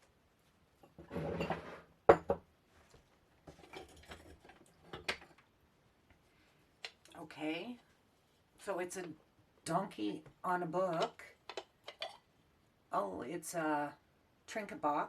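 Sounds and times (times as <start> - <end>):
glassware clinking on a hard surface: 1.4 - 2.4.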